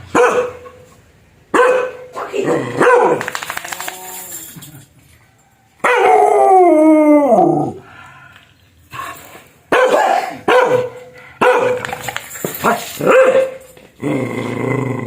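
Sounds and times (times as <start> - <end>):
dog barking: 0.1 - 0.9, 1.5 - 3.3, 5.8 - 6.2, 9.7 - 12.0, 12.6 - 13.7.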